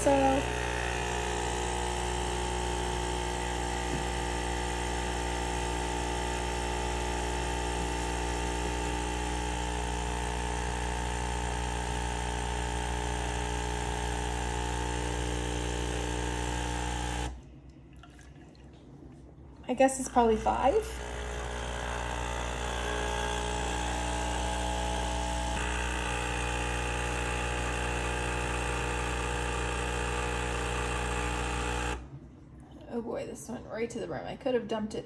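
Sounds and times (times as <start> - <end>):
espresso machine pump buzzing: 0.0 - 17.4, 19.7 - 32.1.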